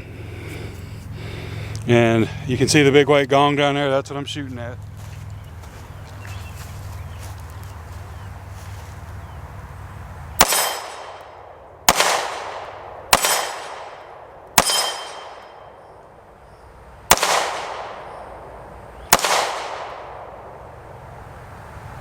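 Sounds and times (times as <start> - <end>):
steel gong target clanging: 10.4 - 11.2, 14.6 - 15.8
pistol shots with echo: 10.4 - 16.0, 17.1 - 18.4, 19.1 - 20.5.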